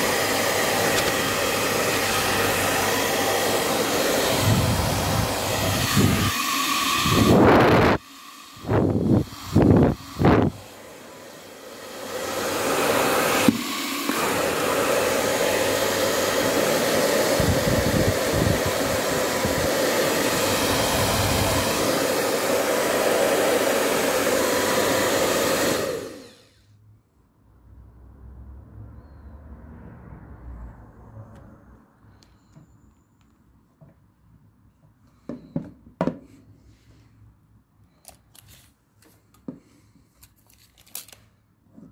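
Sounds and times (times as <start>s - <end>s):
hair dryer click: 0.0s - 8.0s, 8.6s - 26.3s
hair dryer blowing: 0.0s - 26.6s, 35.2s - 36.4s.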